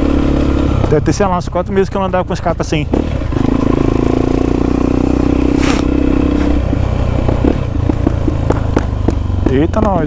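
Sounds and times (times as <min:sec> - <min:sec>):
motorcycle engine droning: 0:00.0 - 0:10.0
exhaust cracks: 0:05.4 - 0:10.0.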